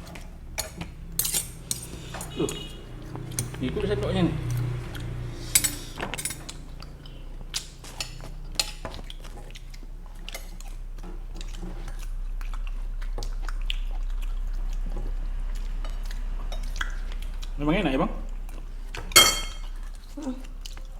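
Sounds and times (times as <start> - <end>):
low hum: 0.0 - 20.8
chewing noodles: 0.0 - 20.9
spoon clinking against plate: 19.1 - 19.7.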